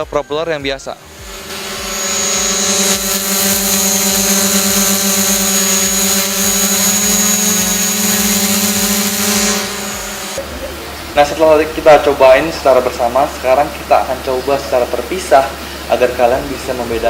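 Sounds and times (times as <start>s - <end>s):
drone buzzing hum: 1.0s - 10.7s.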